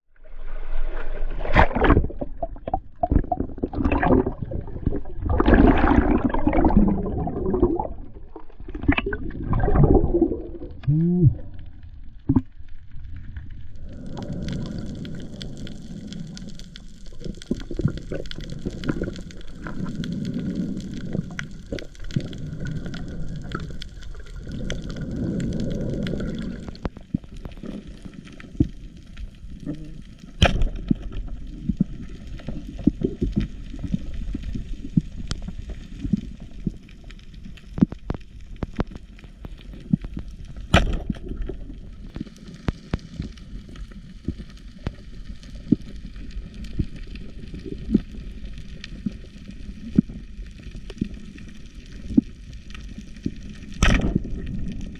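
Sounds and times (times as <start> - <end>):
underwater bubbling: 0.1 - 54.9
crackle of small clicks: 1.9 - 54.9.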